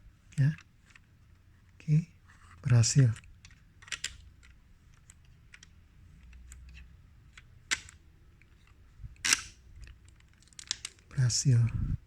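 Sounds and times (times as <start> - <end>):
small plastic parts clicking: 3.2 - 11.1.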